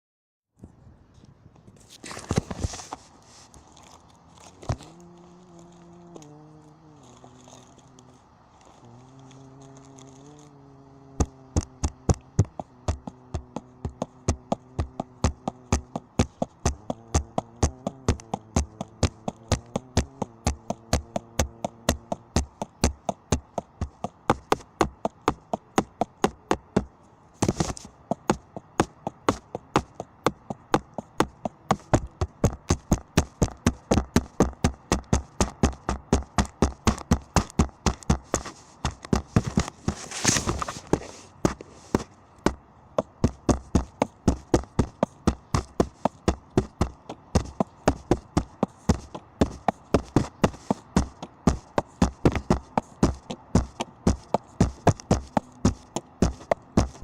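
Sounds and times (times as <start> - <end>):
faint steady hum: 0.6 - 57.0
small engine ticking: 3.7 - 27.0, 28.0 - 40.0, 42.4 - 57.0.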